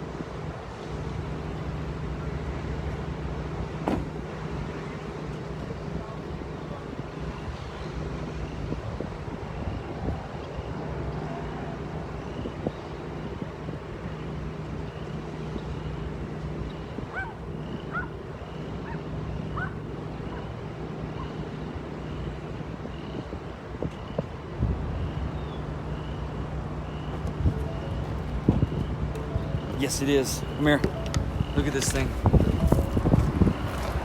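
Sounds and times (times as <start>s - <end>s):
wind buffeting microphone: 6.4s - 14.3s, 22.5s - 34.0s
engine idling hum: 24.7s - 34.0s.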